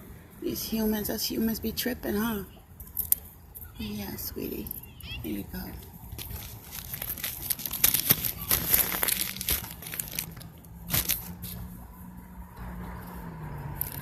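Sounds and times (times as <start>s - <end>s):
plastic bag crinkling: 5.8s - 11.4s.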